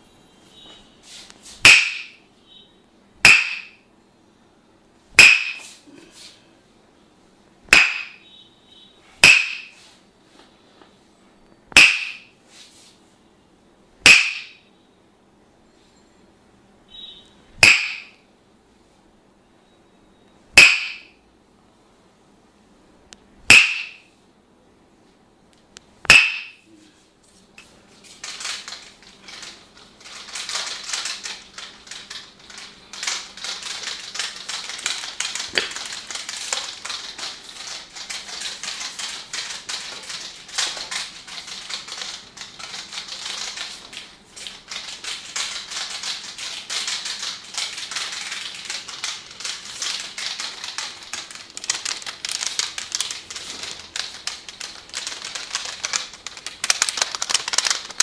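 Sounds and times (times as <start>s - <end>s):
sharp crack: 1.6s - 2.2s, 3.2s - 3.8s, 5.2s - 5.7s, 7.7s - 8.2s, 9.2s - 9.8s, 11.7s - 12.3s, 14.0s - 14.6s, 17.6s - 18.2s, 20.6s - 21.1s, 23.5s - 24.1s, 26.1s - 26.6s, 46.8s - 58.0s
hands clicking during massage: 28.2s - 58.0s.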